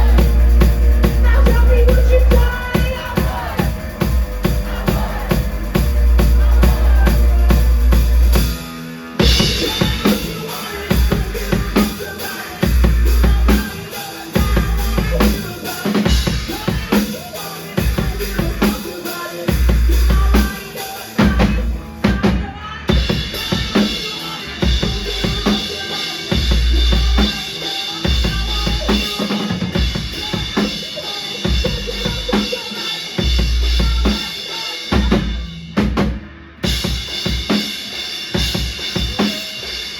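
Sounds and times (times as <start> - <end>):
heavy bass notes: 0.0 - 17.0, 17.8 - 18.7, 21.2 - 25.8, 26.4 - 27.4, 31.5 - 32.4
drum kit beating: 0.0 - 39.9
live rock band playing: 0.0 - 39.9.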